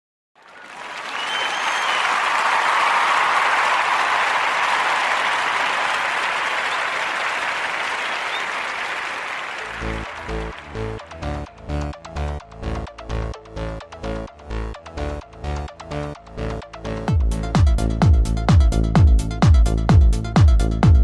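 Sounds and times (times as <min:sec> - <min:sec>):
crowd applause: 0:00.4 - 0:11.5.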